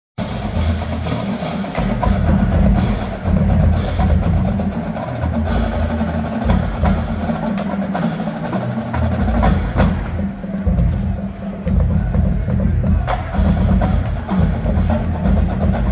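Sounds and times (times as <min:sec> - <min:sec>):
marching band playing: 0:00.2 - 0:15.9
sharp percussion hits: 0:00.2 - 0:15.9.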